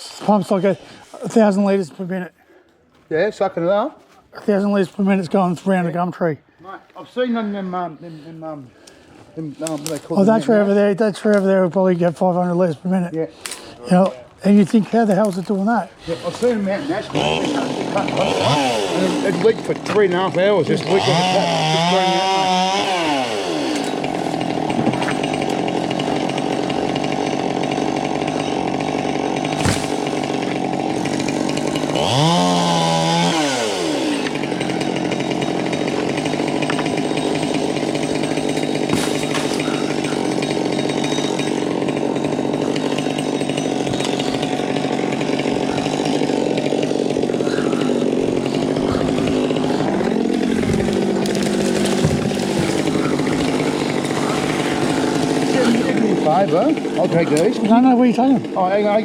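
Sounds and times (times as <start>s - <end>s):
chainsaw engine running: 13.5s - 59.0s.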